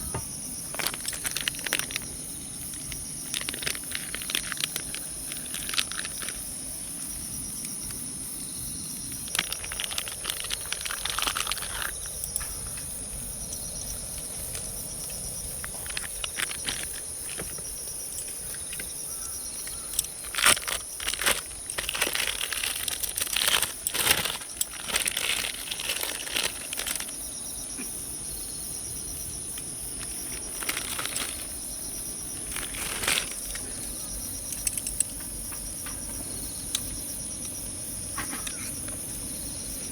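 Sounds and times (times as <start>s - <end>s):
rustling and clattering: 0.0s - 6.4s, 9.2s - 12.9s, 15.6s - 19.0s, 19.7s - 27.2s, 30.0s - 31.7s, 32.3s - 36.3s.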